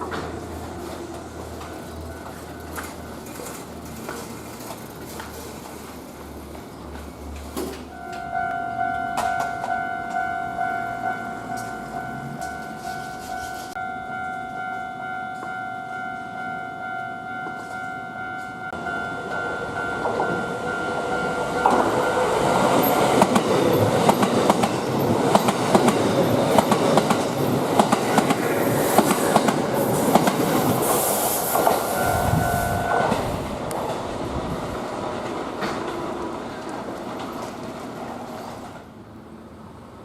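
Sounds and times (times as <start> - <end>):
wheels clicking over rail joints: 0.0 - 10.4, 18.8 - 38.9
electric train passing: 0.0 - 40.0
level crossing warning bell: 1.2 - 3.8, 7.9 - 27.2, 31.8 - 33.4.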